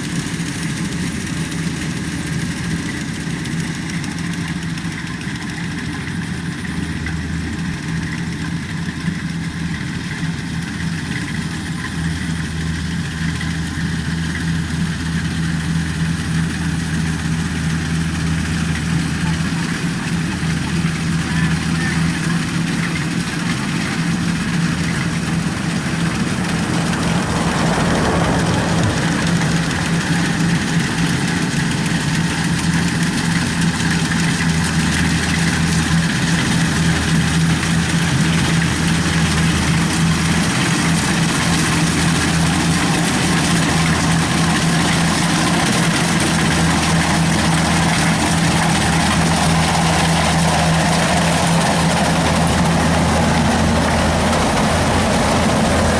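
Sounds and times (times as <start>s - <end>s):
combine harvester diesel engine running: 0.0s - 55.9s.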